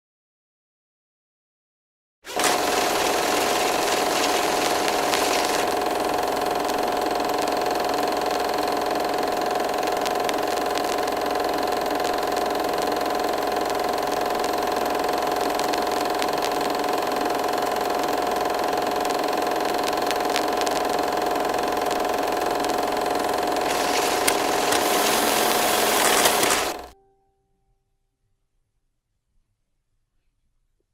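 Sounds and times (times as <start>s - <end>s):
film projector whirring: 2.3s - 27.0s
faint projector clicks: 2.4s - 26.9s.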